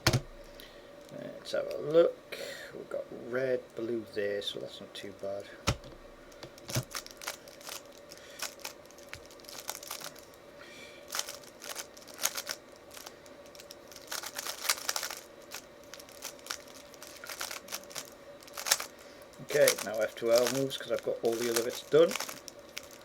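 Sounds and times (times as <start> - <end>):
puzzle cube plastic clicks: 11.1 - 18.9.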